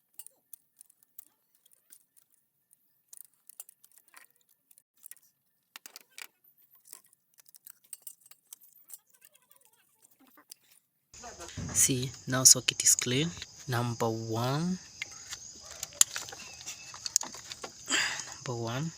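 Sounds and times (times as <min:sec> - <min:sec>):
small clicks and metallic clinks: 0:00.0 - 0:10.8, 0:14.9 - 0:18.5.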